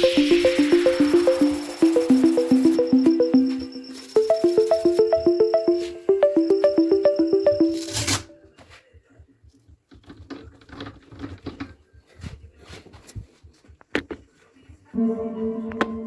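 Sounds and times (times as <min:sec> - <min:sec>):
held musical note: 0:00.0 - 0:08.1.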